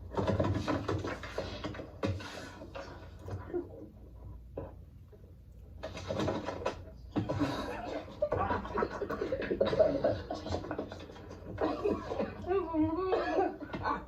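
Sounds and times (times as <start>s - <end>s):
people laughing: 7.2s - 14.0s.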